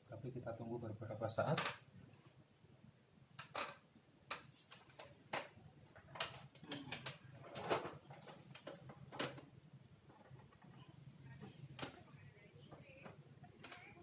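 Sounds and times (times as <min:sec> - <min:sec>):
faint low hum: 0:05.0 - 0:14.0.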